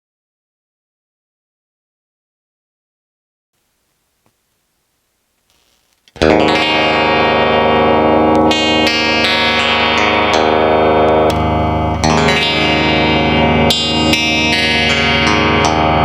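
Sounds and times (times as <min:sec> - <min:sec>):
distorted electric guitar: 0:05.4 - 0:16.0.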